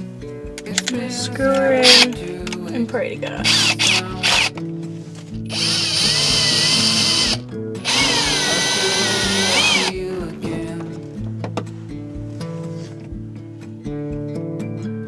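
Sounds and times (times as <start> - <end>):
background music: 0.0 - 15.0
power drill driving screws: 1.8 - 2.6, 3.4 - 4.6, 5.5 - 10.0.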